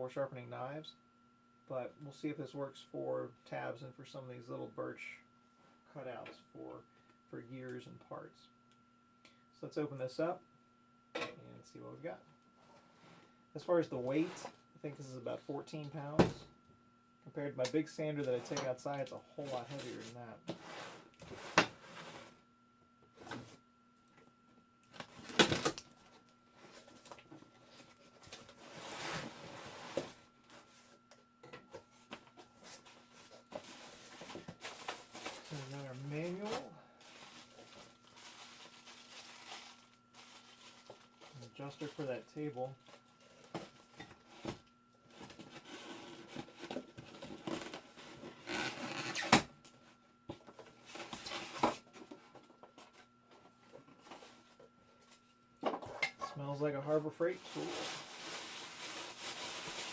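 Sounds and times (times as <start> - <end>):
rustling scrape of cardboard: 19.8 - 22.4, 27.6 - 30.9
packing rustling: 32.6 - 42.1, 57.4 - 59.9.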